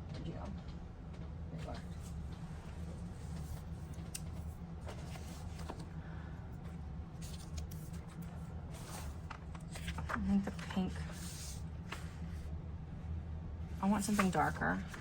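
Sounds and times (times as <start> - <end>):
book pages rustling: 1.7 - 6.0, 7.2 - 12.5, 14.0 - 15.0.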